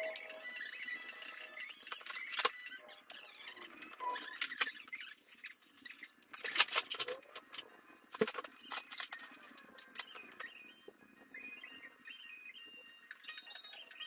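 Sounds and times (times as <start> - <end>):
objects clicking and clattering: 1.8 - 10.5.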